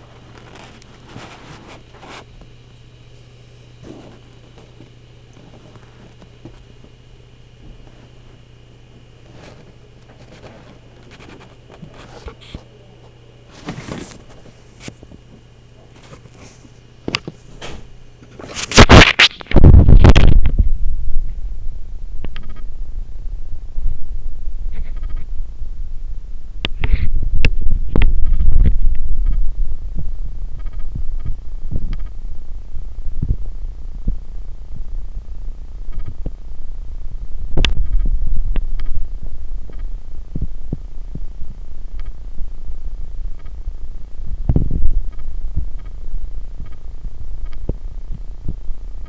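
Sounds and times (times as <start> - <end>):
faint electrical hum: 0.0 - 49.0
distorted scratching bursts: 18.4 - 20.5
distorted low rumble: 18.9 - 49.0.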